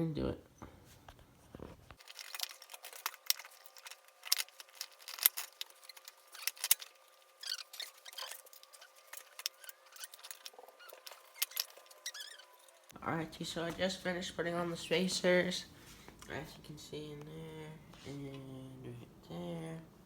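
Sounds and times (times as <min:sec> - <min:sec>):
metal tools clicking and clinking: 0:02.0 - 0:12.9.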